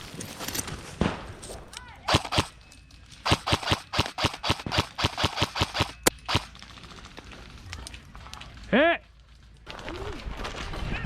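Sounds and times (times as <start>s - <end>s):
airsoft gun shots: 2.1s - 2.5s, 3.2s - 6.5s.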